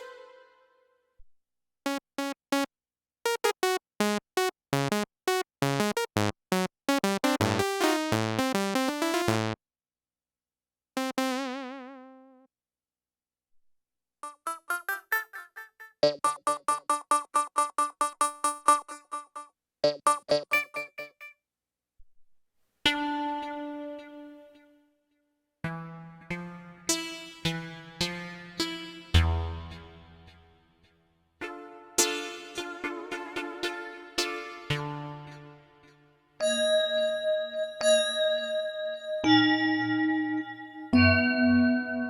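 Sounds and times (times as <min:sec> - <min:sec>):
synthesizer notes and chords: 0:00.0 - 0:00.6, 0:31.4 - 0:36.0.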